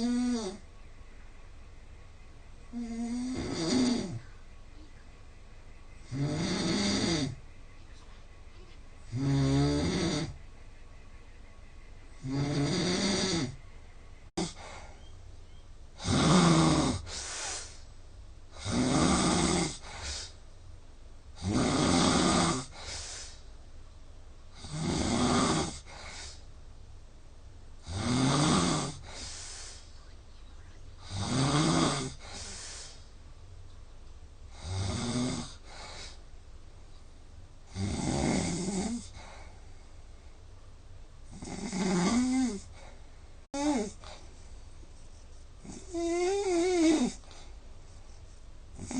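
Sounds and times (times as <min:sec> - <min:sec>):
man snoring loudly: 0:00.0 - 0:00.6, 0:02.7 - 0:04.2, 0:06.0 - 0:07.4, 0:09.1 - 0:10.4, 0:12.2 - 0:13.6, 0:14.4 - 0:14.7, 0:16.0 - 0:17.2, 0:18.6 - 0:20.3, 0:21.4 - 0:22.8, 0:24.6 - 0:26.1, 0:27.8 - 0:29.3, 0:31.0 - 0:32.5, 0:34.5 - 0:36.2, 0:37.7 - 0:39.2, 0:41.3 - 0:42.8, 0:43.6 - 0:44.1, 0:45.6 - 0:47.2
soft breath: 0:29.0 - 0:30.7, 0:32.1 - 0:33.2.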